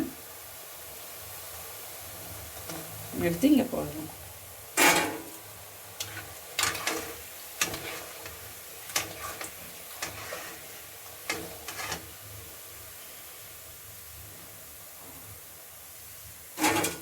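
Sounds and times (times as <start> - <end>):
oil sizzling: 0.0 - 17.0
metal spoon scraping a pan: 4.8 - 5.4, 6.0 - 12.2, 16.6 - 17.0.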